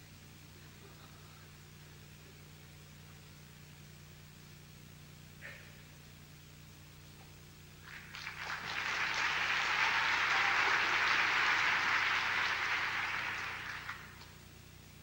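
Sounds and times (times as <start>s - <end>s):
audience applauding: 7.8s - 14.4s.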